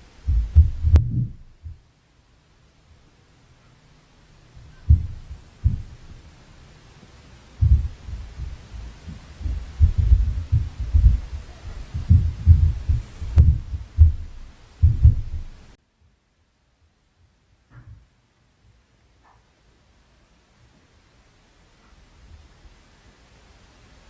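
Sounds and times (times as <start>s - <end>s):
dull thuds through ceiling: 0.0s - 1.9s, 4.4s - 6.4s, 7.4s - 15.8s.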